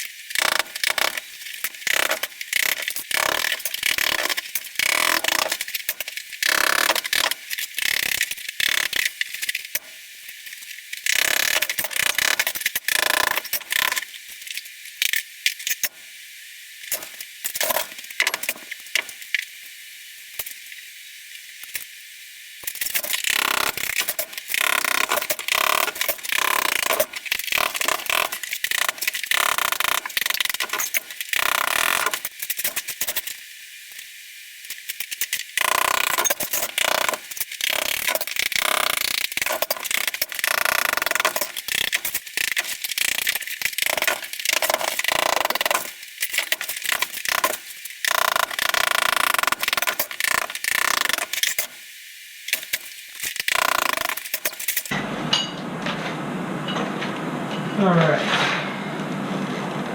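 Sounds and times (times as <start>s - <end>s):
tiles being broken with hand tools: 22.6s - 33.3s, 34.7s - 51.8s, 52.5s - 54.9s.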